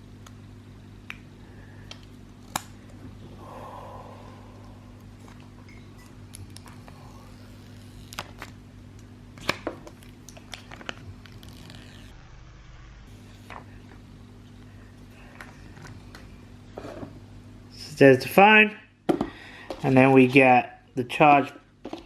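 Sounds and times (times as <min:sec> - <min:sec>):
low electrical hum: 0:00.0 - 0:22.0
packaging rustle: 0:09.4 - 0:12.1.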